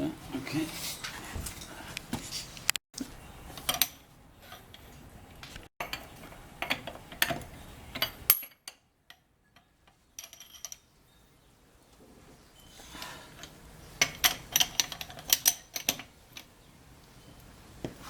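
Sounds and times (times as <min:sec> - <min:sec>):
tools clattering: 0:10.2 - 0:10.8, 0:13.4 - 0:16.5.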